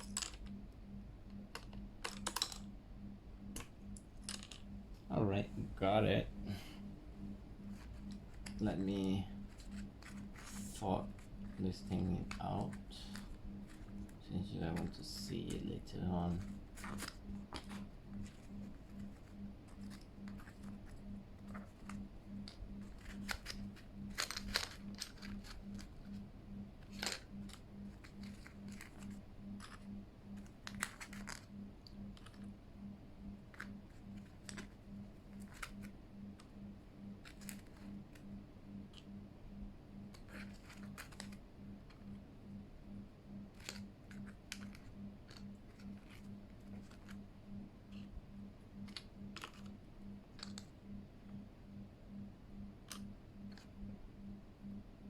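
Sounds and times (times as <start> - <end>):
pulsing low hum: 0.0 - 55.0
plastic keycaps clicking: 9.6 - 25.9.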